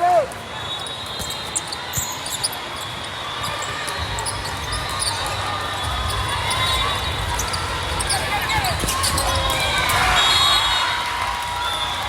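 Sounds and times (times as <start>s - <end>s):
sneaker squeaks: 0.4s - 10.8s
volleyballs bouncing on gym floor: 3.4s - 10.3s.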